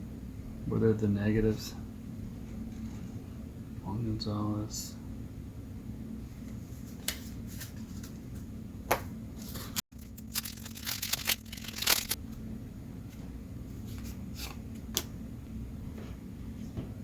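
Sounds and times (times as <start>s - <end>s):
steady low hum: 0.0s - 17.0s
trading cards flipped through: 9.4s - 12.2s.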